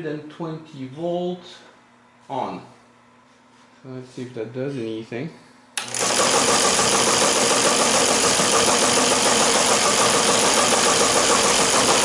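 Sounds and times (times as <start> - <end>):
teleprinter mechanical chatter: 5.8 - 12.0.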